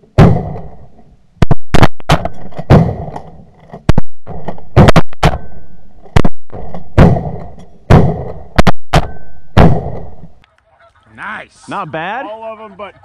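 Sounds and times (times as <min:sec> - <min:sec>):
shotgun blasts: 0:01.4 - 0:10.4.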